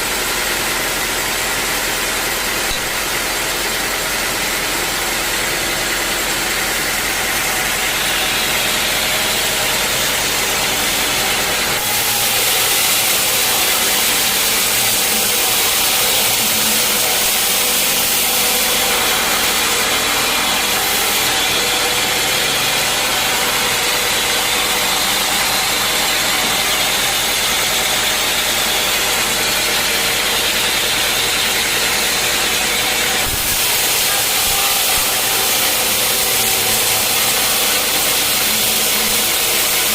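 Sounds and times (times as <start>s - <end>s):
sawmill engine running: 0.0s - 39.9s
bright hiss: 11.8s - 19.9s, 33.2s - 39.9s.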